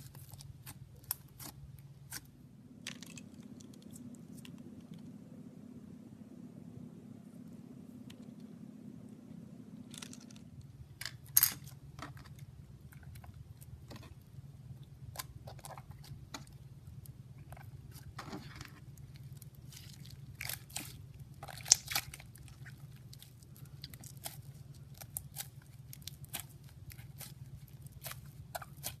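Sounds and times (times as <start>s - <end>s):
steady low hum: 0.0s - 29.0s
hands squeezing sticky slime: 18.8s - 29.0s.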